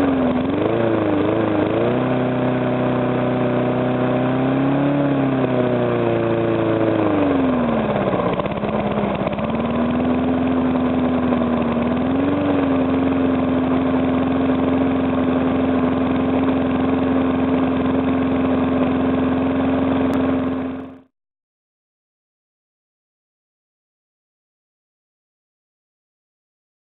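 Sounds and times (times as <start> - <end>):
small engine idling: 0.0 - 21.1.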